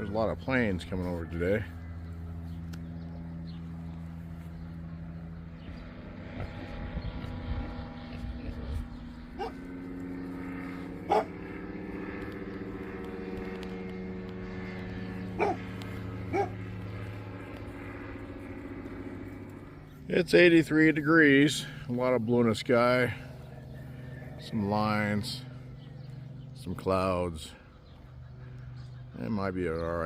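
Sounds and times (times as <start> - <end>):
plane engine droning overhead: 0.0 - 30.0
dog barking: 9.4 - 9.6, 11.1 - 11.4, 15.4 - 15.6, 16.3 - 16.6.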